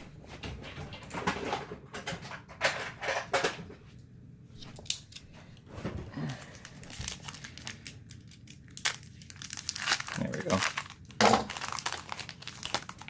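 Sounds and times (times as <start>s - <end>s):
knife cutting foil pack: 6.2s - 13.0s.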